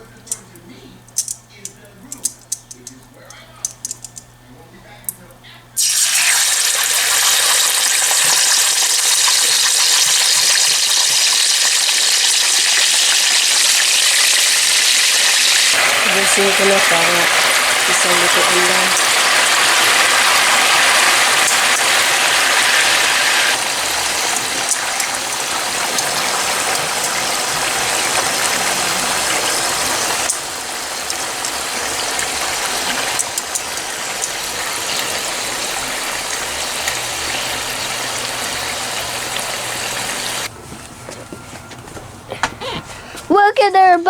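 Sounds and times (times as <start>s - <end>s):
food sizzling in hot oil: 5.8s - 40.5s.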